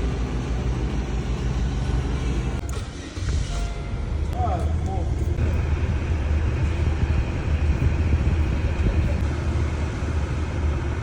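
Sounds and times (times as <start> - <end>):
car engine running: 5.0 - 11.0.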